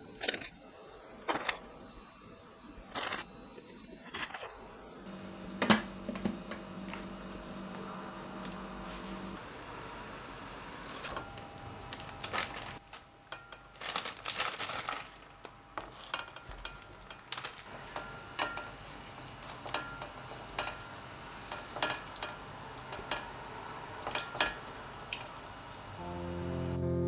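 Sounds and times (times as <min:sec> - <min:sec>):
faint steady hiss: 0:05.1 - 0:12.9, 0:17.5 - 0:27.0
dishes and utensils clinking: 0:15.8 - 0:25.3.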